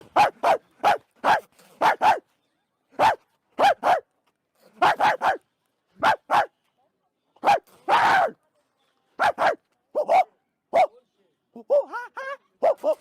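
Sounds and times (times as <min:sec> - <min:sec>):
dog barking: 0:00.1 - 0:02.2, 0:03.0 - 0:04.1, 0:04.8 - 0:05.4, 0:06.0 - 0:06.5, 0:09.2 - 0:10.9.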